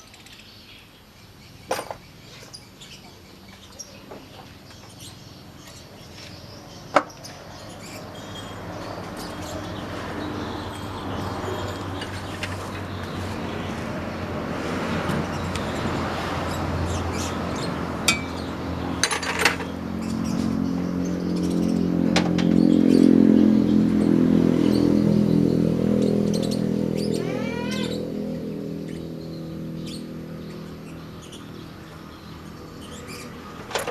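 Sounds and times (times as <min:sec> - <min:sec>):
diesel engine running: 0:08.7 - 0:33.9.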